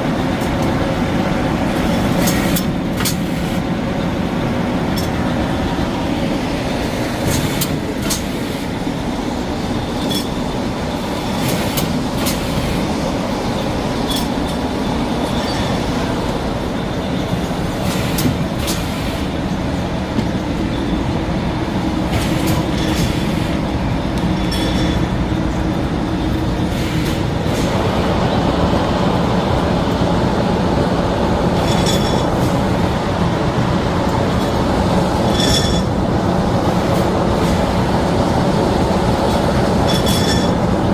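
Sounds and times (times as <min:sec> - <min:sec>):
machine clacks: 0:01.7 - 0:03.5, 0:07.2 - 0:08.6, 0:11.3 - 0:13.0, 0:22.1 - 0:25.4, 0:39.2 - 0:40.9.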